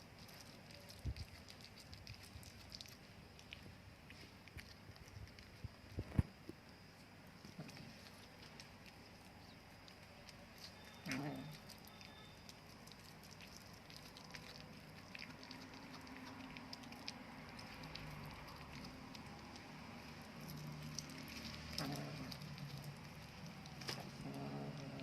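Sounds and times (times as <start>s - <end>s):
cat crunching food: 0.0s - 25.0s
cat low vocal sound: 10.9s - 11.8s, 21.3s - 23.0s, 23.7s - 25.0s.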